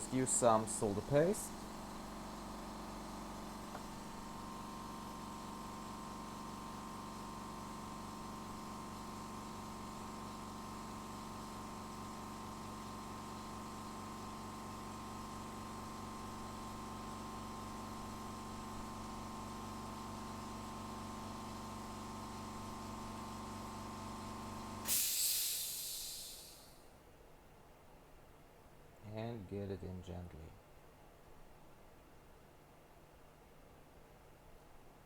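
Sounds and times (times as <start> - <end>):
electrical equipment humming: 0.0 - 6.0
loud hiss of air: 24.8 - 26.8.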